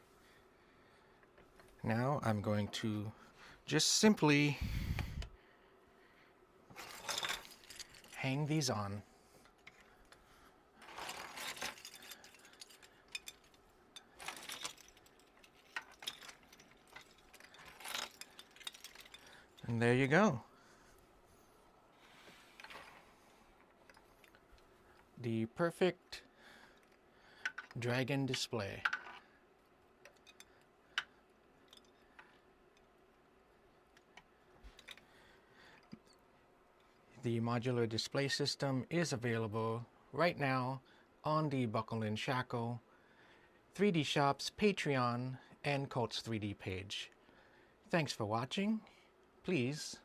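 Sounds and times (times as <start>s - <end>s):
handling rustles: 6.7s - 8.2s, 10.8s - 19.8s.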